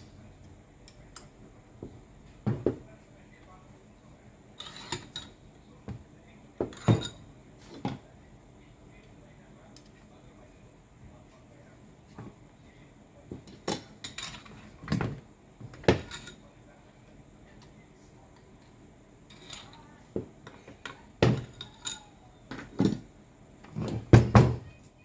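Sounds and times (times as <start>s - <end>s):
metal parts clinking: 21.3s - 23.0s.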